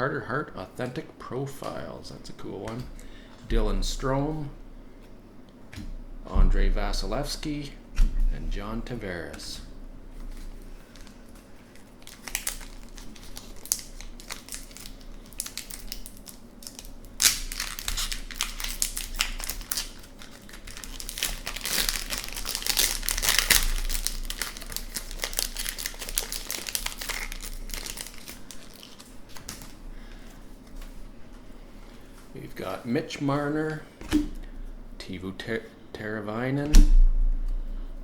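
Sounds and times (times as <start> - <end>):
wrapper tearing and crinkling: 10.9 - 29.8.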